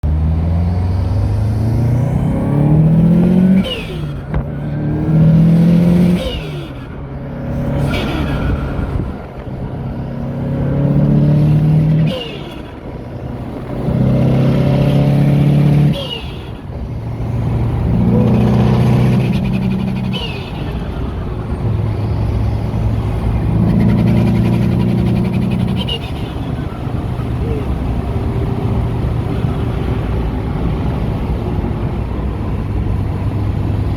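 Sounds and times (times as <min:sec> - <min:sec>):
engine revving: 0:00.0 - 0:33.9
turbo fluttering chirp: 0:17.6 - 0:27.8.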